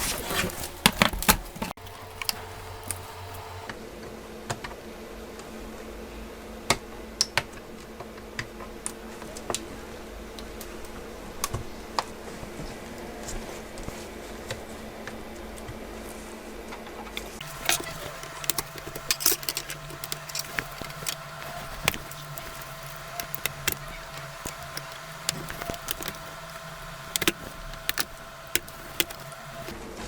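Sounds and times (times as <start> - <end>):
clicks and taps of tools: 17.4 - 29.8
steady hum: 17.4 - 29.8.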